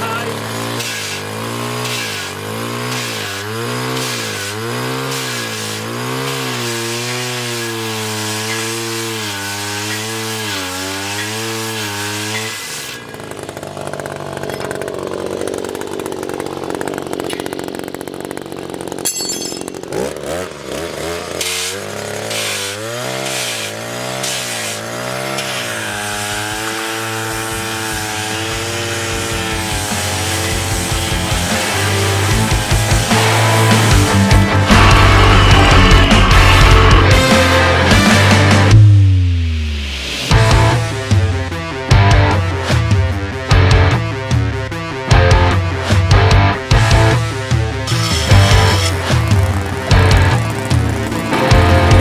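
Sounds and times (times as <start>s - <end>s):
power sharpener grinding: 0.0s - 38.7s, 40.3s - 52.0s
rough grinding hiss: 21.2s - 38.7s, 47.0s - 52.0s.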